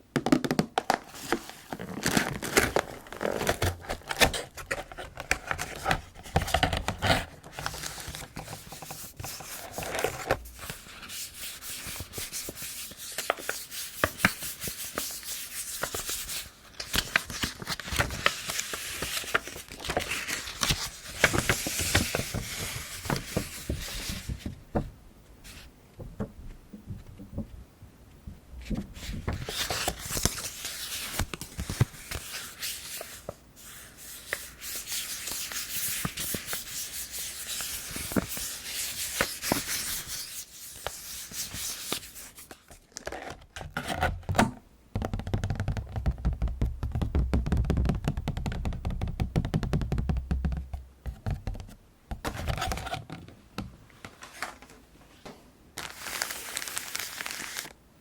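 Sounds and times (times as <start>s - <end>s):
hands rustling packaging: 0.8s - 24.5s, 29.0s - 43.3s, 55.8s - 57.8s.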